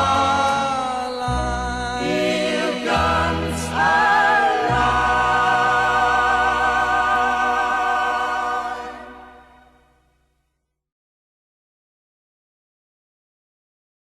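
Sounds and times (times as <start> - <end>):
pop song with choir and band: 0.0 - 9.9.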